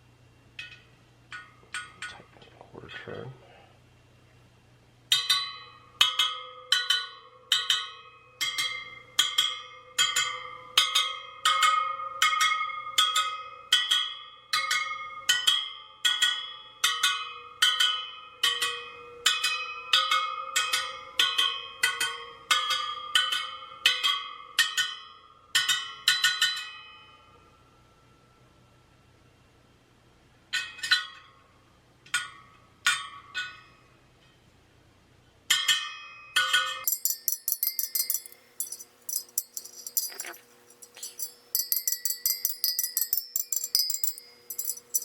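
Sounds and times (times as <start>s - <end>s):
wheel spokes pinging: 36.8s - 45.0s.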